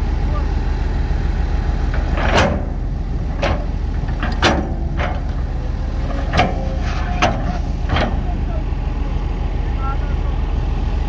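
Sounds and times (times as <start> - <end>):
diesel machinery drone: 0.0 - 11.0
short metal clank: 1.9 - 8.4.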